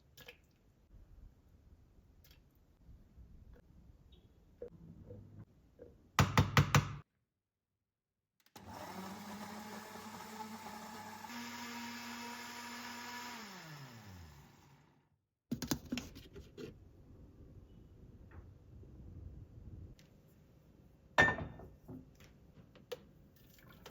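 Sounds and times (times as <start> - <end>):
blender motor running: 8.6 - 15.1.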